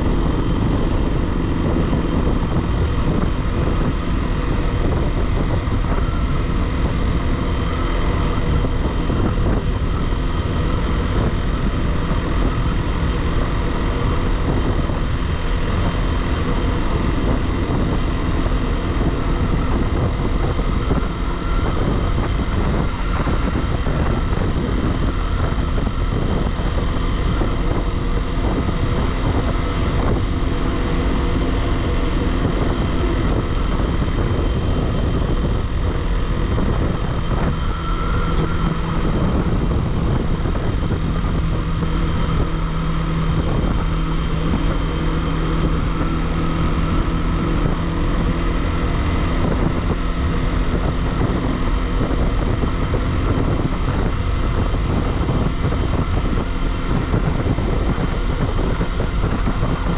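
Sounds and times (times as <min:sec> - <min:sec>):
motorcycle engine running: 0:00.0 - 0:59.9
wind on microphone: 0:00.0 - 0:59.9.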